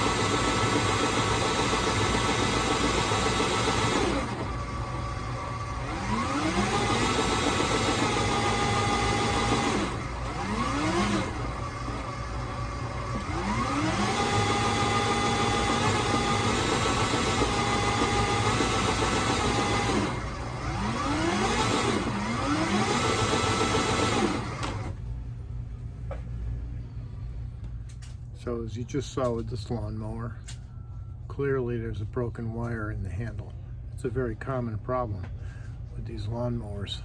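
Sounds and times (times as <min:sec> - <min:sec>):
electric lawn mower whining: 0:00.0 - 0:25.0.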